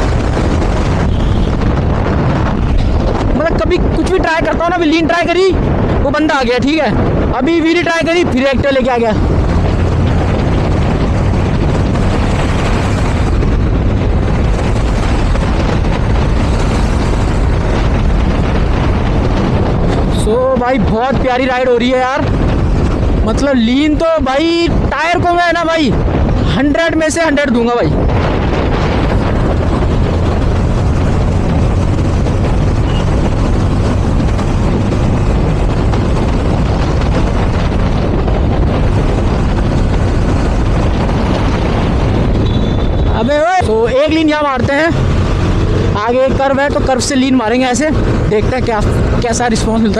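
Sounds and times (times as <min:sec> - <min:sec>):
motorcycle engine running: 0:00.0 - 0:03.4, 0:09.1 - 0:20.1, 0:28.0 - 0:49.9
road noise: 0:00.0 - 0:49.9
wind rushing over microphone: 0:00.0 - 0:49.9.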